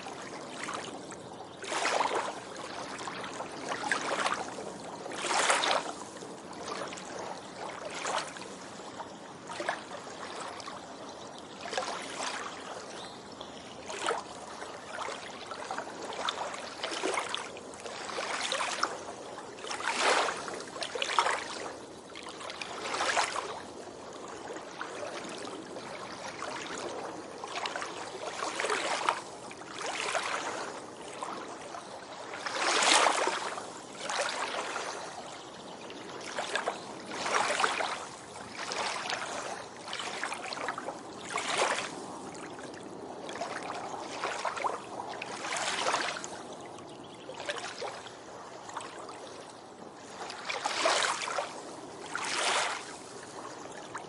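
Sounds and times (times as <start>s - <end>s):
background hiss of water: 0.0s - 54.0s
small waves breaking on beach: 0.0s - 54.0s.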